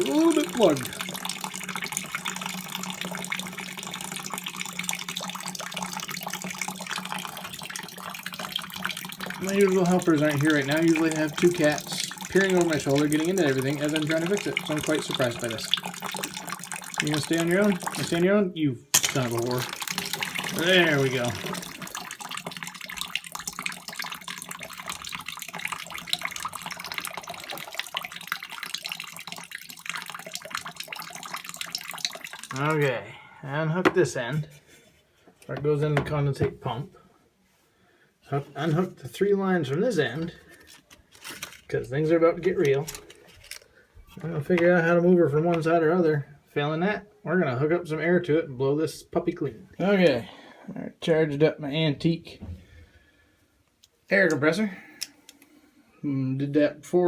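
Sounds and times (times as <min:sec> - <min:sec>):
water trickling and splashing: 0:00.0 - 0:18.3, 0:19.0 - 0:32.9.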